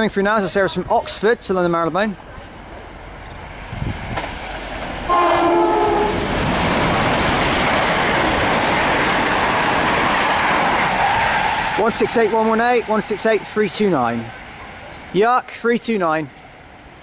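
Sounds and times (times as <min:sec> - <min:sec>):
train passing at speed: 0:01.7 - 0:17.0
train horn blast: 0:05.1 - 0:06.4.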